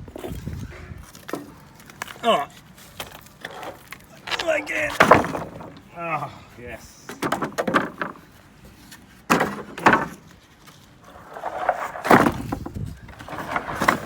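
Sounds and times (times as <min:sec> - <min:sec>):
wooden knocks and scrapes: 0:03.0 - 0:05.9, 0:07.1 - 0:14.0.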